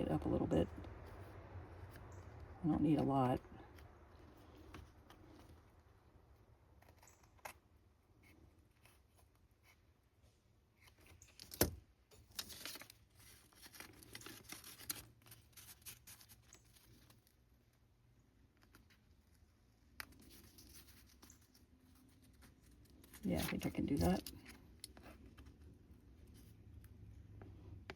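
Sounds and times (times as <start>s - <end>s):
paper crackling: 10.8s - 17.8s, 18.5s - 26.6s.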